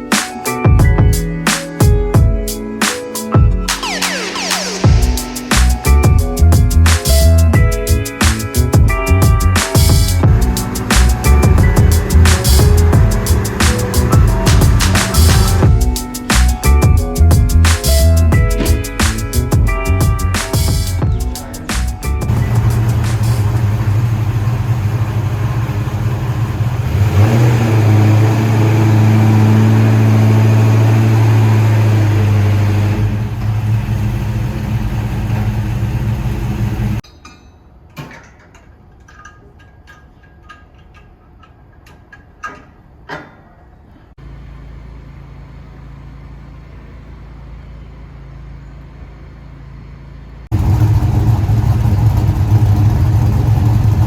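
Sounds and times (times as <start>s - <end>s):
car engine running: 3.8s - 37.0s, 44.2s - 54.0s
low hum: 8.6s - 26.7s, 44.2s - 54.0s.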